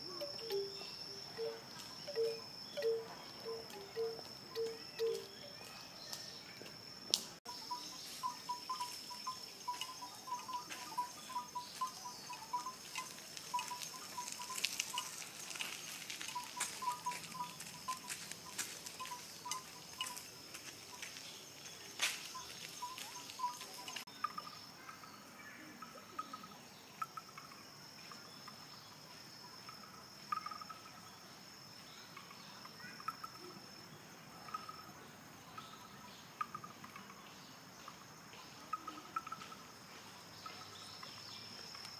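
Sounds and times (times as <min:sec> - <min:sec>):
rapid chirping: 0:00.0 - 0:05.6
high insect trill: 0:00.0 - 0:41.9.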